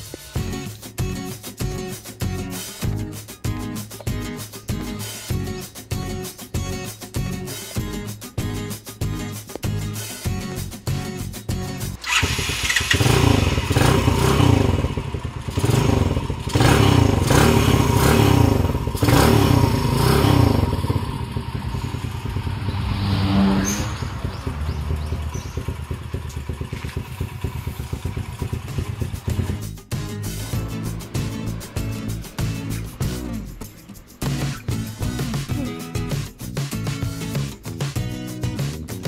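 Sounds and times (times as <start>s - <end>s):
motorcycle engine starting and revving: 11.8s - 37.5s.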